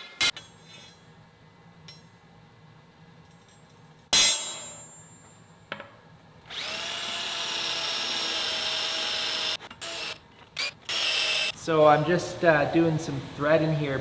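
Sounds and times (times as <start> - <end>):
steel clang: 3.5 - 5.5
power drill running: 6.5 - 11.6.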